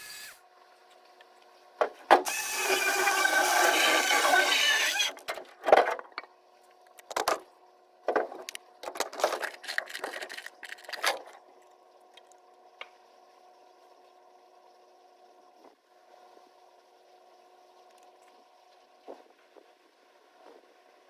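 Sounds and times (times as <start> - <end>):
faint steady hum: 0.0 - 21.0
power tool running: 2.2 - 5.2.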